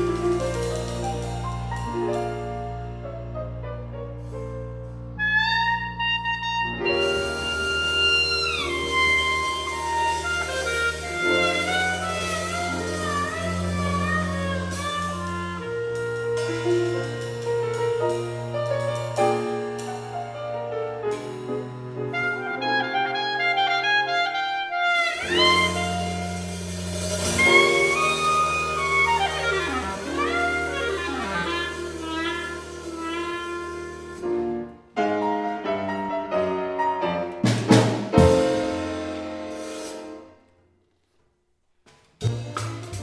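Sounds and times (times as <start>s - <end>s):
swing big band jazz: 0.0s - 40.4s, 42.2s - 43.0s
clarinet solo runs: 5.2s - 17.1s, 22.1s - 34.3s.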